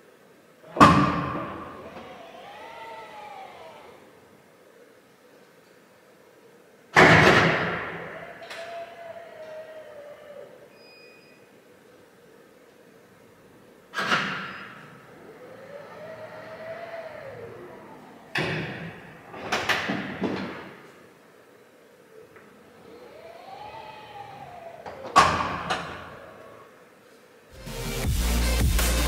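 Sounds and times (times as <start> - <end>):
lid motor whining: 0.7 - 4.4, 7.0 - 11.0, 14.0 - 21.0, 22.2 - 26.8
clunks: 14.0 - 21.0, 22.3 - 26.6.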